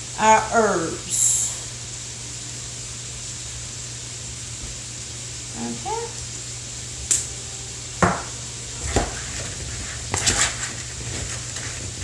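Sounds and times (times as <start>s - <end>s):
dishes and utensils clinking: 8.0s - 12.0s.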